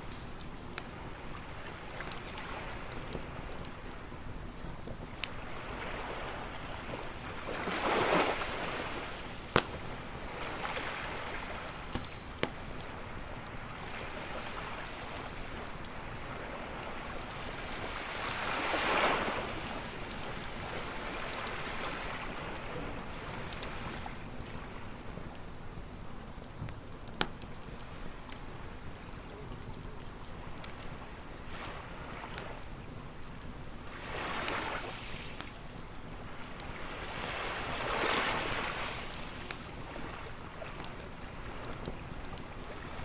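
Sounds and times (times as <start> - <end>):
burning wood popping: 0.0 - 5.7, 6.5 - 17.4, 26.2 - 31.0, 39.1 - 43.0
campfire crackling: 0.0 - 43.0
ocean waves washing onto beach: 0.0 - 43.0.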